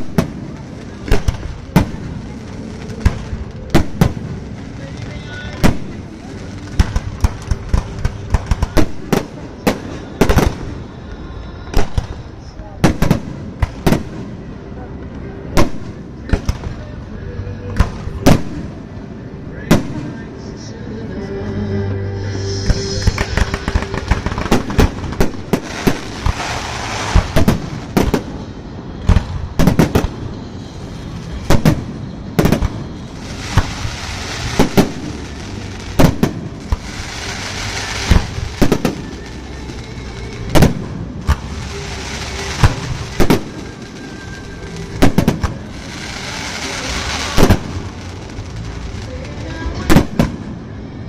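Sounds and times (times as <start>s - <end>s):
fireworks bangs: 0.0s - 11.1s, 11.7s - 14.5s, 17.7s - 19.0s, 19.6s - 20.2s, 22.4s - 50.6s
fireworks crackling hiss: 0.0s - 14.6s, 22.1s - 50.8s.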